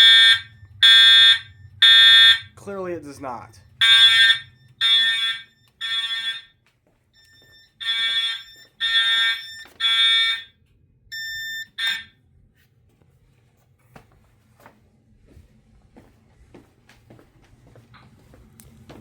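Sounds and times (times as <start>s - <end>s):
fire alarm horn blasts: 0.0s - 12.2s
short quiet alarm tone: 3.8s - 6.6s, 7.2s - 10.5s, 11.1s - 12.1s.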